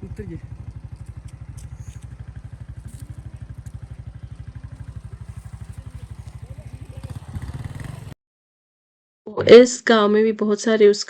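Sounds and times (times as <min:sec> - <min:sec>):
scooter engine running: 0:00.0 - 0:08.2.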